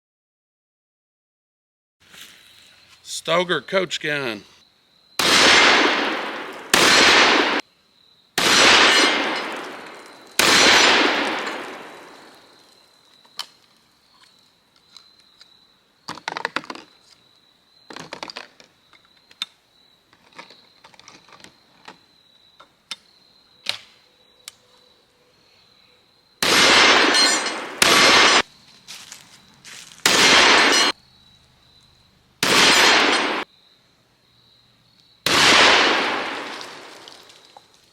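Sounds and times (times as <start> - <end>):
shotgun blasts: 5.2 - 7.6, 8.4 - 12.6, 26.4 - 28.5, 30.0 - 31.0, 32.4 - 33.4, 35.2 - 37.0.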